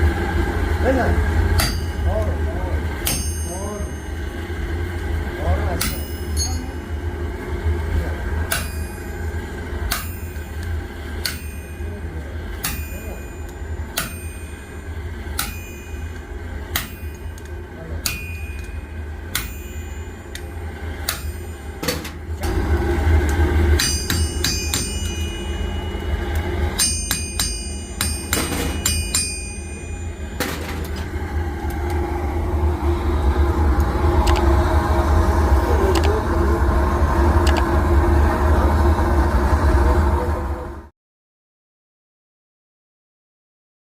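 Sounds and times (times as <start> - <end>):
steady low hum: 0.0 - 40.9
hammer striking metal on anvil: 1.5 - 4.6, 5.7 - 6.8, 8.4 - 22.6, 23.7 - 32.0.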